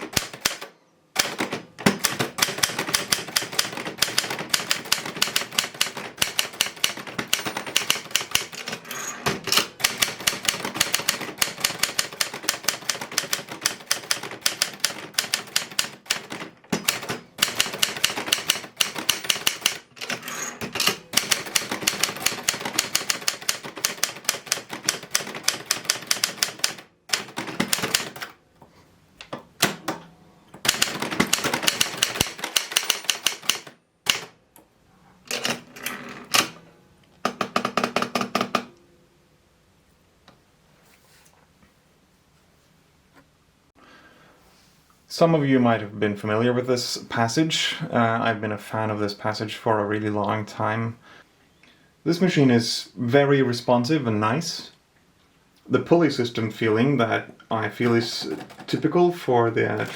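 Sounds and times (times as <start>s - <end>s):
manual typewriter key strikes: 0.0s - 28.3s, 30.6s - 34.3s.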